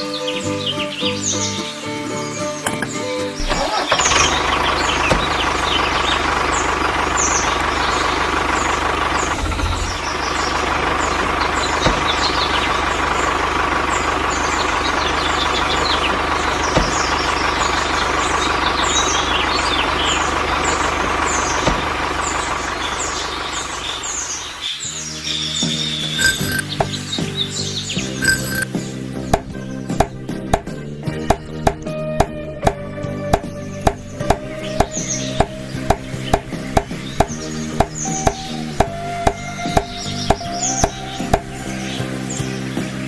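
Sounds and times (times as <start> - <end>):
bird chirps: 0.0 - 43.0
vehicle engine running: 2.6 - 43.0.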